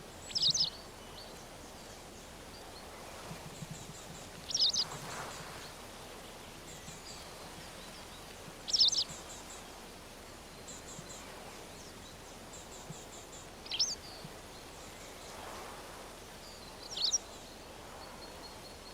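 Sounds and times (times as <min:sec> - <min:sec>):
songbird high-pitched calls: 0:00.3 - 0:00.8, 0:04.5 - 0:04.9, 0:08.7 - 0:09.2, 0:13.6 - 0:14.2, 0:16.8 - 0:17.3.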